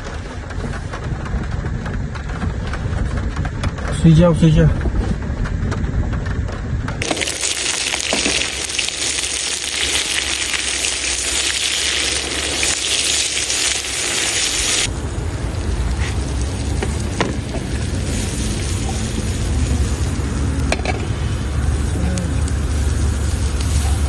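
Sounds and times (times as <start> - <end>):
heavy rain on camper roof: 0.0 - 24.0
low rumbling noise: 0.0 - 24.0.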